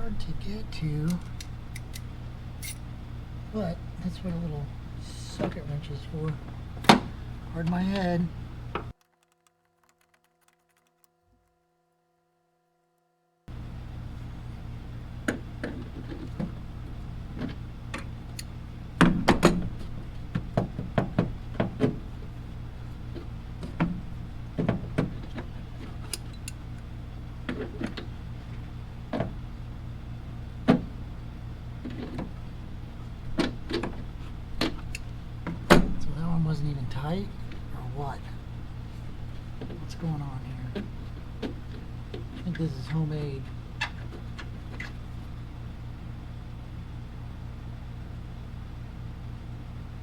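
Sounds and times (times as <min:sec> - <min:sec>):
steady low hum: 0:00.0 - 0:09.0, 0:13.5 - 0:50.0
socket wrench clicking: 0:01.1 - 0:02.8.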